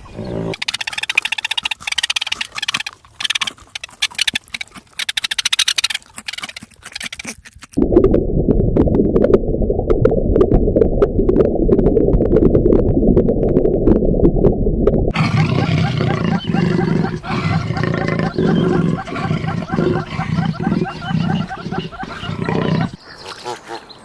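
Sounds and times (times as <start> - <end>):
horse calls with rapid pulses: 15.2 - 23.8.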